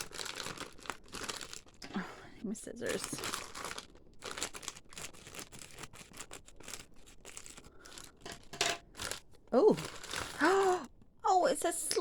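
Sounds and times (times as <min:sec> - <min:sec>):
scissors cutting plastic bag: 0:00.0 - 0:01.9, 0:02.8 - 0:10.8
plastic crinkling: 0:00.0 - 0:11.0.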